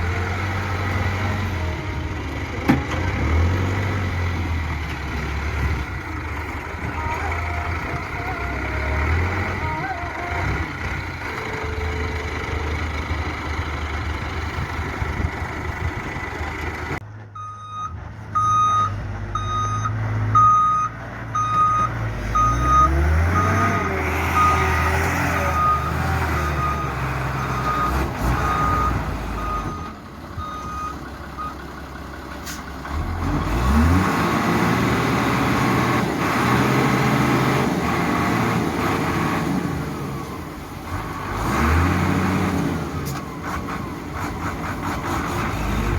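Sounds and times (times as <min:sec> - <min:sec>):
diesel engine revving: 0:00.0 - 0:45.9
reversing alarm beeps: 0:17.4 - 0:23.8.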